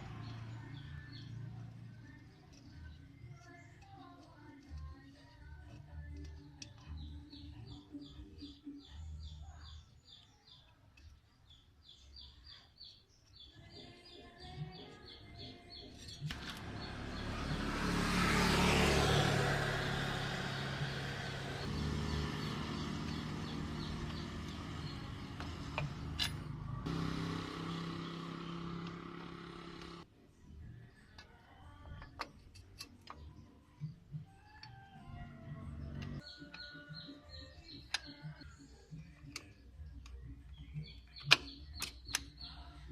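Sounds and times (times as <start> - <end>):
vehicle engine running: 0.0 - 10.2, 14.5 - 30.1, 35.0 - 42.4
birds chirping: 0.0 - 30.1, 30.9 - 42.9.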